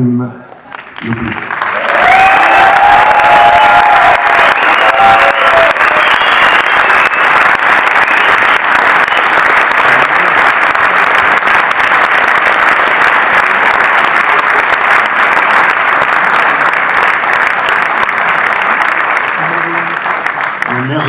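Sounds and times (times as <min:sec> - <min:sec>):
audience applauding: 0:00.5 - 0:21.0.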